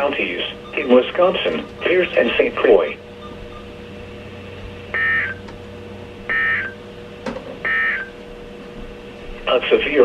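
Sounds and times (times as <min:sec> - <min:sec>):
digital data tone bursts: 0:00.0 - 0:03.7, 0:04.9 - 0:05.4, 0:06.3 - 0:06.8
faint radio hum: 0:00.0 - 0:04.0, 0:09.2 - 0:10.0.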